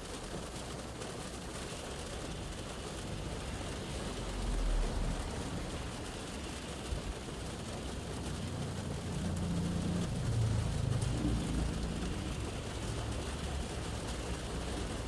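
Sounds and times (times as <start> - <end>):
rain on car roof and windows: 0.0 - 15.0
passing vehicle rumble: 3.0 - 15.0.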